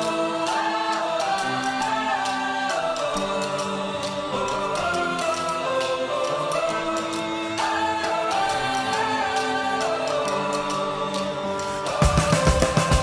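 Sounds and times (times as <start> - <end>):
held chords: 0.0 - 13.0
steady percussive beat: 0.0 - 13.0.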